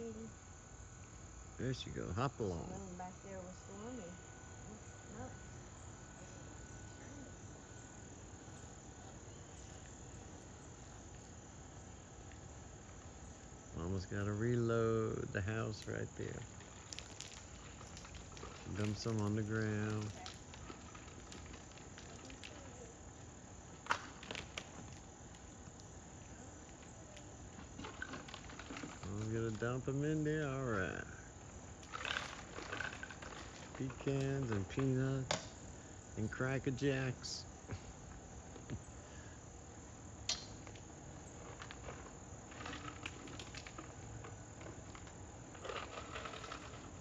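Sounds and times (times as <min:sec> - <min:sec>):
crickets chirping: 0:00.0 - 0:47.0
rustling clatter: 0:41.3 - 0:47.0.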